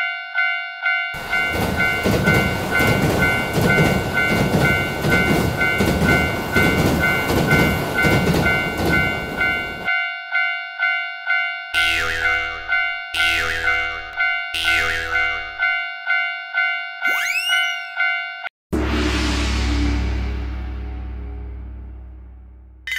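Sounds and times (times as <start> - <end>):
level-crossing alarm bell: 0.0 - 18.5
train wheels clattering: 1.2 - 9.9.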